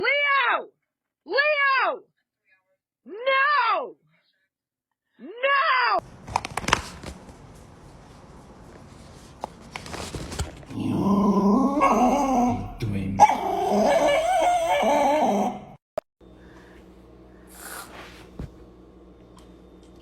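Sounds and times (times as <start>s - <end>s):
dog whining: 11.3s - 15.8s.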